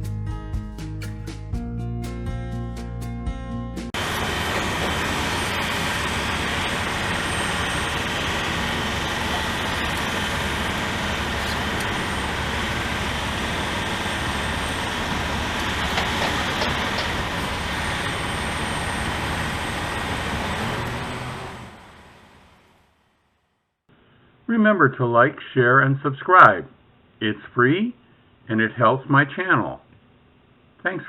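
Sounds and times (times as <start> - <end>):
music: 0.0 - 4.0
road traffic rushing: 4.0 - 23.5.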